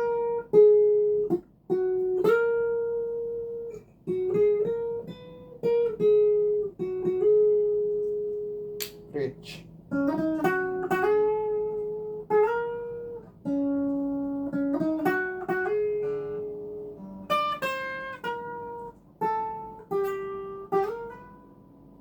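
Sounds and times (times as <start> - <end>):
clean electric guitar melody: 0.0 - 9.1, 9.7 - 22.0.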